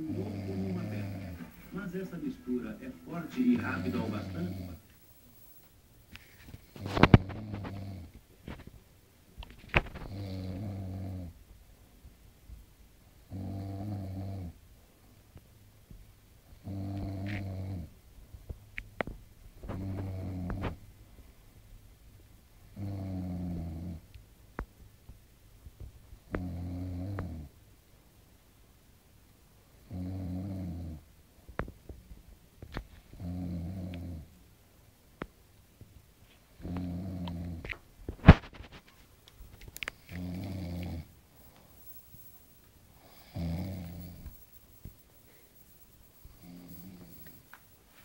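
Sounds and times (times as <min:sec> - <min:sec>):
pet snoring: 0:00.0 - 0:08.2, 0:09.8 - 0:11.4, 0:13.2 - 0:14.6, 0:16.4 - 0:18.0, 0:19.6 - 0:20.8, 0:22.7 - 0:24.1, 0:26.3 - 0:27.5, 0:29.8 - 0:31.1, 0:33.1 - 0:34.3, 0:36.6 - 0:38.5, 0:39.8 - 0:47.8
quiet breathing: 0:00.0 - 0:08.6, 0:16.4 - 0:18.0, 0:39.5 - 0:48.0.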